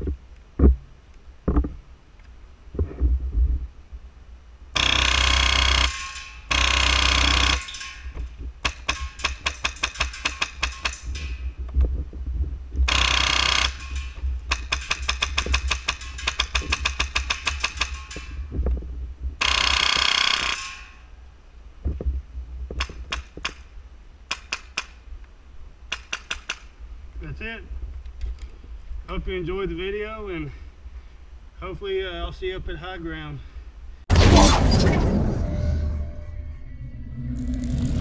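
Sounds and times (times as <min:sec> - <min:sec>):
airsoft rifle full auto bursts: 0:04.8 - 0:05.9, 0:12.9 - 0:13.8, 0:19.4 - 0:20.6.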